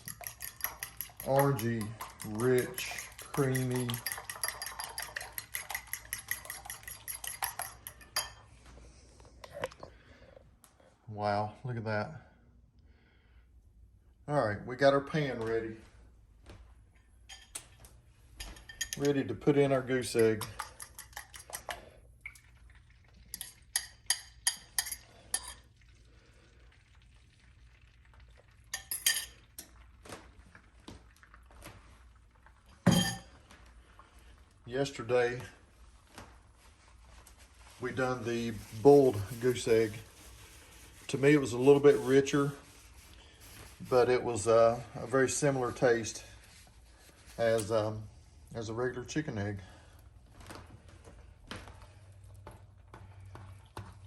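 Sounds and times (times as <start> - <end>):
utensil clinking against bowl: 0.0 - 8.5, 18.4 - 21.9, 23.3 - 25.7, 28.7 - 29.8, 32.9 - 33.3.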